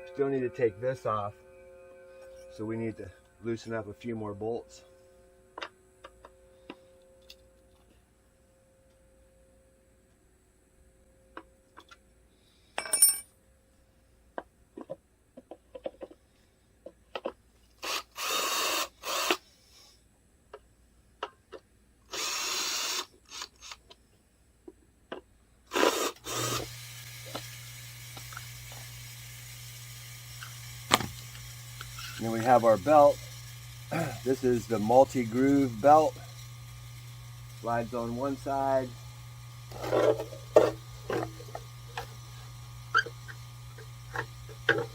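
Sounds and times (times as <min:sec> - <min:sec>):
steady low hum: 0:00.0 - 0:15.4, 0:24.1 - 0:44.9
metallic clink of tools: 0:12.8 - 0:13.3
cordless drill backing out bolts: 0:25.7 - 0:39.0, 0:39.6 - 0:44.9.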